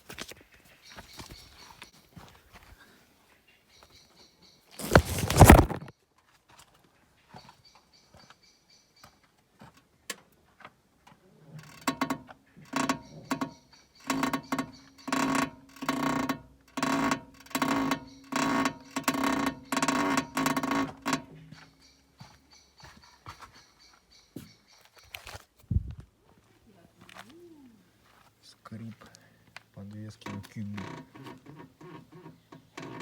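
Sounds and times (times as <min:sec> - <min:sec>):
car suspension creaking: 0:04.8 - 0:05.9, 0:11.6 - 0:21.4, 0:30.2 - 0:33.0.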